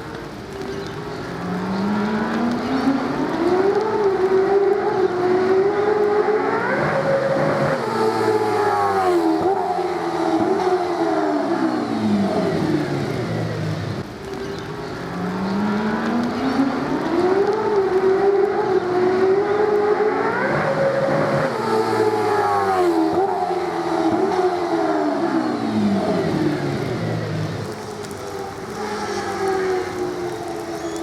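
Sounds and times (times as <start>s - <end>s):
race car engine under load: 0.0s - 31.0s.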